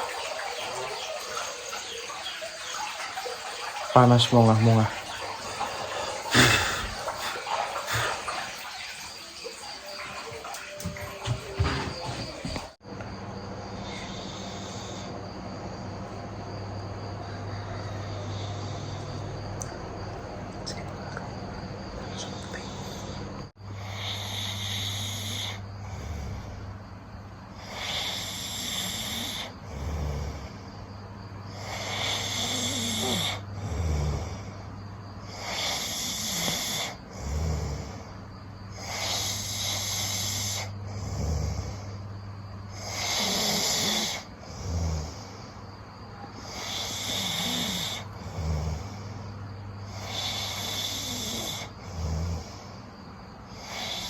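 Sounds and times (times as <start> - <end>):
steady low hum: 11.0 - 35.4, 37.0 - 46.7, 47.3 - 53.7
person snoring heavily: 31.6 - 34.5, 42.8 - 45.3, 46.5 - 49.0, 49.9 - 52.6.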